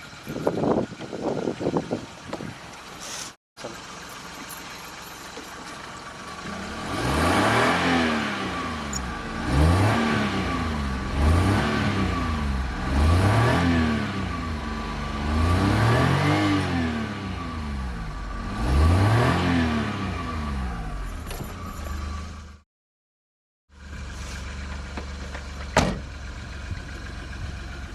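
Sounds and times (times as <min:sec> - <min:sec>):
car engine revving: 0:06.3 - 0:21.0.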